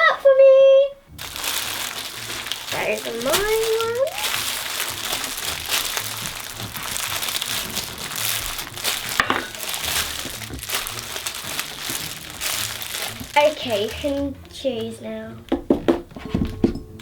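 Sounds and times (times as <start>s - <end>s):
crinkling and rustling: 1.1s - 15.0s
objects clacking in a bowl: 1.2s - 14.1s.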